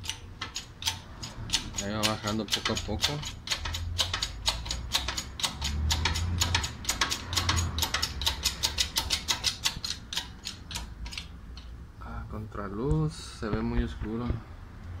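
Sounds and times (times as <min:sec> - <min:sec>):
press ratchet clicking: 0:00.0 - 0:11.7.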